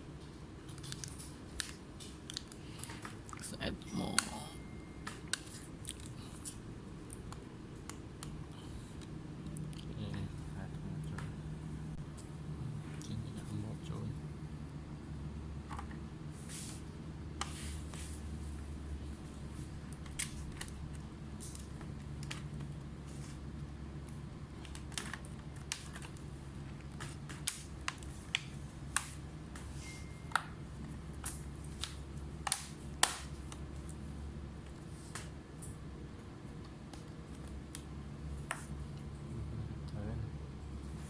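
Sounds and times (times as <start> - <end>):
steady low hum: 0.0 - 41.0
laptop parts clicking: 24.6 - 29.2.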